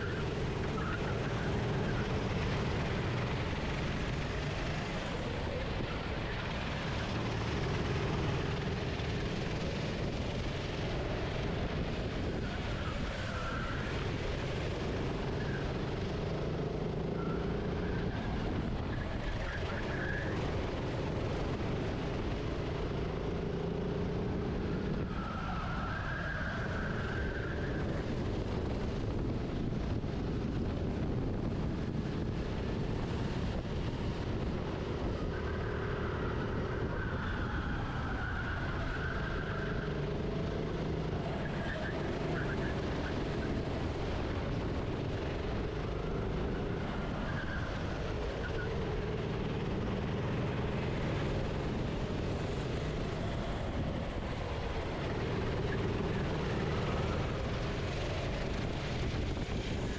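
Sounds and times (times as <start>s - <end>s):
steady rush of noise: 0.0s - 59.9s
kart engine revving: 35.6s - 44.0s.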